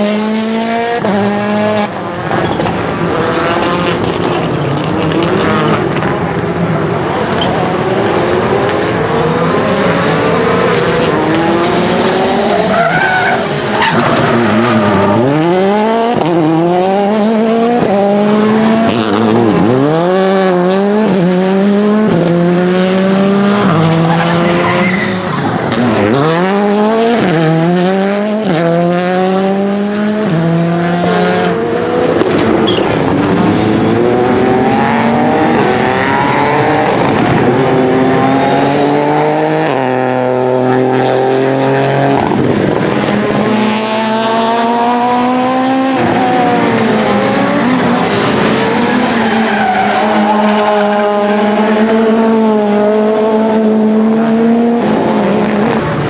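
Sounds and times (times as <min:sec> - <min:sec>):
rally car engine revving: 0:00.0 - 0:56.0
tyre squeal: 0:10.8 - 0:15.6, 0:23.5 - 0:26.3, 0:32.6 - 0:33.0.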